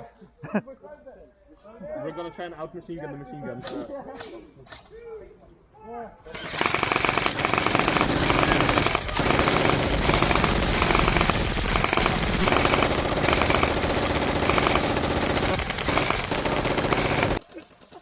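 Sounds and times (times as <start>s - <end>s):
airsoft guns firing full-auto: 6.3s - 17.4s.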